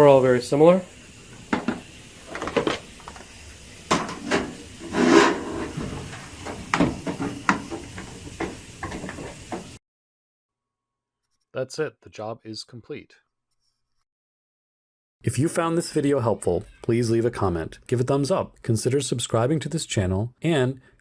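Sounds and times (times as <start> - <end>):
plastic scraping: 3.9 - 9.6.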